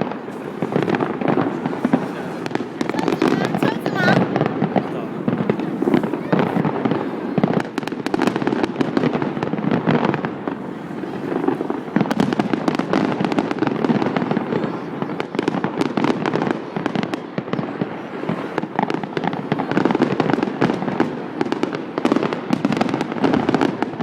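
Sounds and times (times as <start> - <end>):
fireworks bangs and crackles: 0.0 - 24.0.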